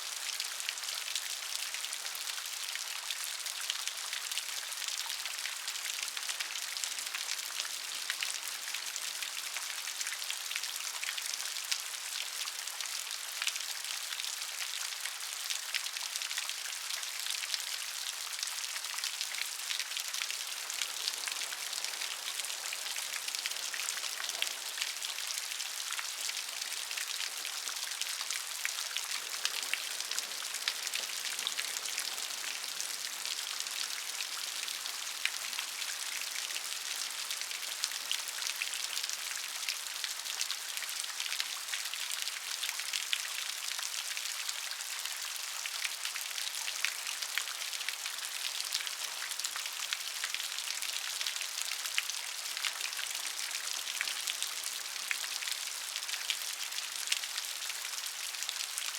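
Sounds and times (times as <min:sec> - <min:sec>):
raindrops pattering: 0:19.5 - 0:34.6.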